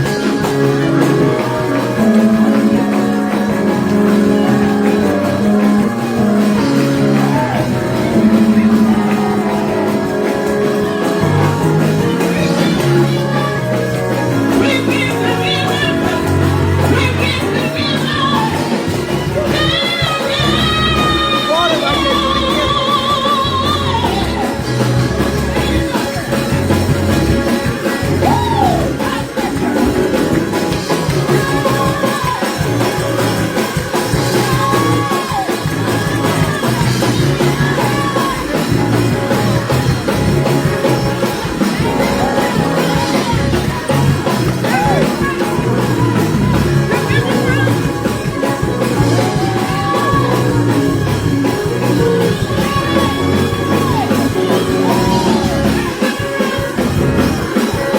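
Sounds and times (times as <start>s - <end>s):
band music with singing: 0.0s - 57.9s
strong bass line: 21.9s - 29.0s, 32.6s - 56.0s, 56.8s - 57.5s.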